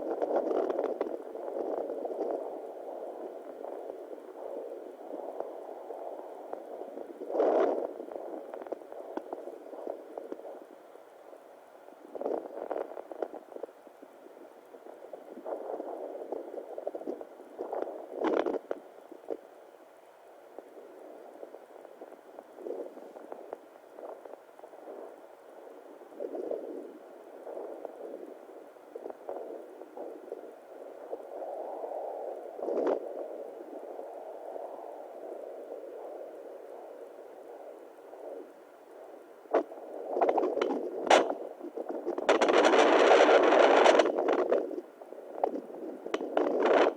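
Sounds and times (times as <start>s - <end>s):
probe scraping crackles: 0.0s - 2.5s, 12.1s - 13.7s, 15.4s - 19.4s, 32.6s - 33.0s, 39.5s - 46.9s.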